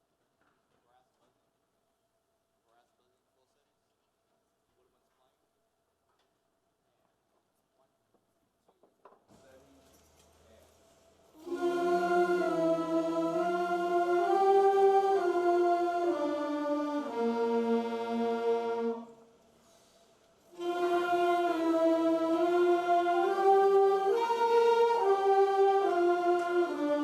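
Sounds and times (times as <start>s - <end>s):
band playing slow held chords: 11.4s - 19.1s, 20.6s - 27.0s.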